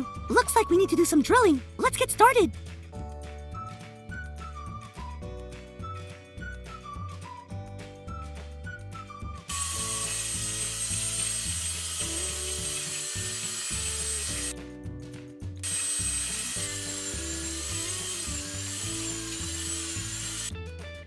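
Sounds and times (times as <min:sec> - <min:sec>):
light background music: 0:00.0 - 0:21.0
toy drill whirring: 0:09.5 - 0:14.6, 0:15.6 - 0:20.5.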